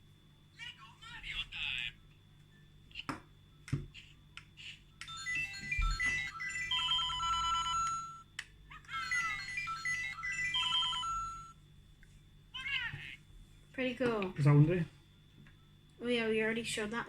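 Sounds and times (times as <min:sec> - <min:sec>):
toy speaker bleeping game sounds: 0:04.6 - 0:08.2, 0:08.9 - 0:11.6.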